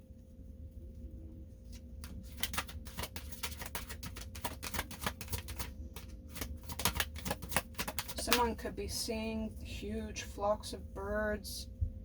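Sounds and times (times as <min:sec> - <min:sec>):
cards being shuffled: 0:01.7 - 0:08.5.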